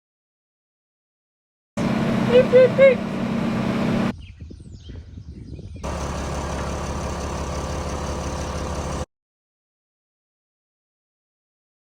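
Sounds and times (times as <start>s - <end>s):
engine running: 1.8s - 4.1s, 5.8s - 9.1s
deeper engine running: 1.8s - 4.2s, 5.8s - 9.1s.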